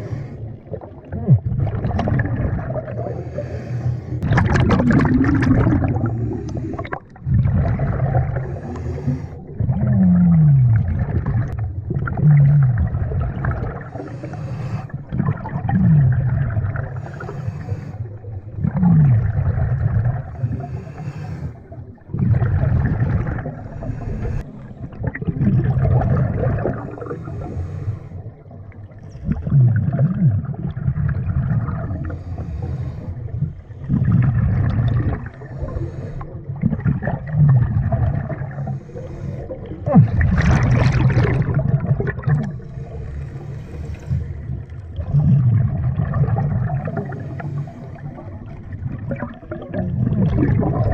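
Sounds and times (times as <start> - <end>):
diver breathing through regulator: 0.0 - 0.7, 2.8 - 4.4, 5.0 - 7.2, 8.1 - 9.9, 13.8 - 15.2, 16.9 - 18.5, 20.2 - 22.0, 23.3 - 25.0, 26.6 - 28.6, 31.9 - 34.3, 35.1 - 36.6, 38.2 - 45.0, 46.8 - 48.7
bubbling exhalations: 0.0 - 3.6, 4.2 - 50.9.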